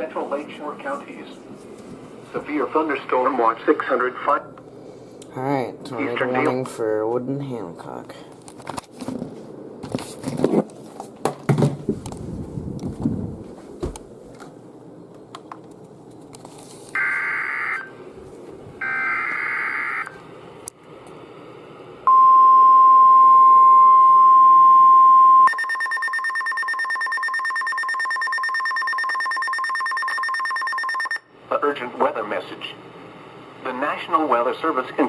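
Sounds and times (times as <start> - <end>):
harsh pulsing alarm beep: 17.0 - 17.9, 18.8 - 20.1, 22.1 - 31.3
steady warning alarm tone: 17.0 - 18.0, 18.8 - 20.2, 22.1 - 31.4
screeching data tones: 18.8 - 20.1, 25.4 - 31.3.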